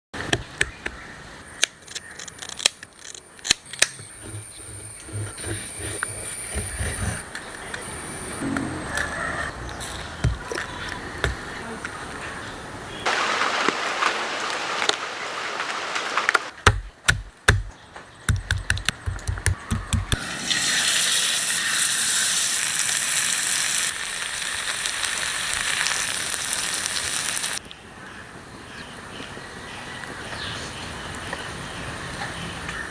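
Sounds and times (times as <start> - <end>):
fish sizzling in hot oil: 20.2 - 27.6.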